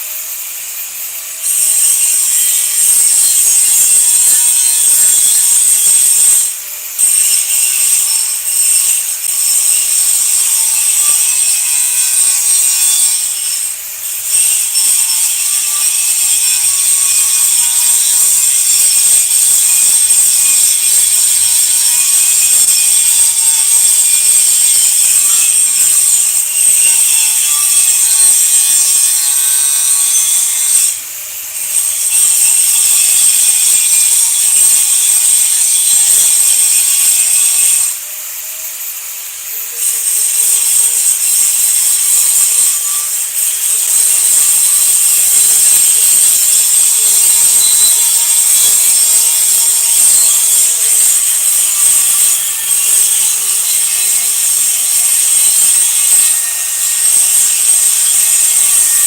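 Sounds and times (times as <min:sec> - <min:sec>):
arc welding crackling sizzle: 0:00.0 - 0:59.0.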